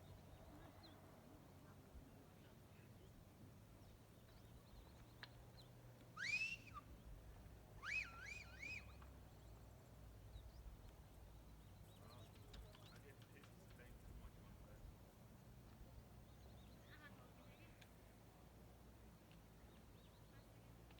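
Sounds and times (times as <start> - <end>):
bird whistled note: 6.2 - 6.8, 7.8 - 8.9.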